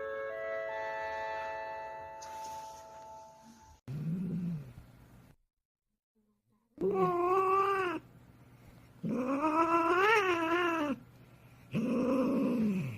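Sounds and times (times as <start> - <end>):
cat meowing: 6.8 - 8.1, 9.1 - 11.0.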